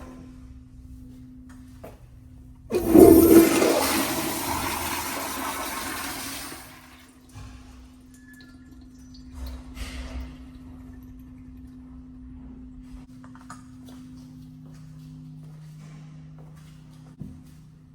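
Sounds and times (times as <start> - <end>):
toilet flushing: 2.7 - 11.8.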